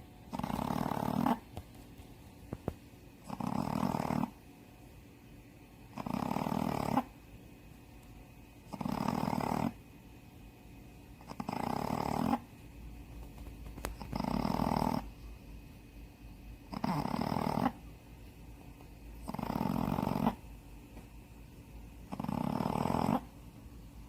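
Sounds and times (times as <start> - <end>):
dog snoring: 0.3 - 1.6, 3.2 - 4.4, 5.9 - 7.2, 8.6 - 9.9, 11.2 - 12.5, 13.8 - 15.2, 16.6 - 17.8, 19.2 - 20.5, 22.1 - 23.4.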